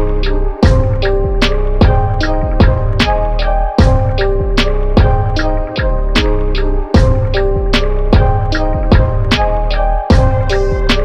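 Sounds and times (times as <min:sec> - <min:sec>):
held instrumental tones: 0:00.0 - 0:11.0
sharp drum hits: 0:10.1 - 0:11.0.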